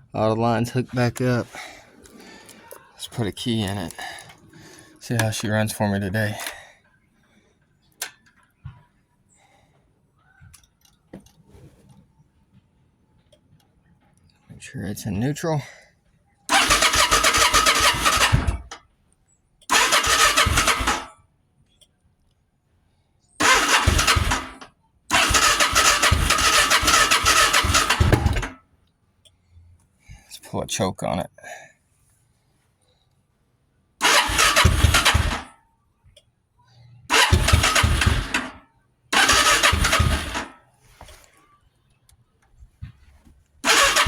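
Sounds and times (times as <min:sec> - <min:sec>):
motorcycle engine cranking: 0:01.0 - 0:06.7, 0:16.5 - 0:18.8, 0:19.7 - 0:21.1, 0:23.4 - 0:28.6, 0:34.0 - 0:35.5, 0:37.1 - 0:41.3, 0:43.6 - 0:44.0.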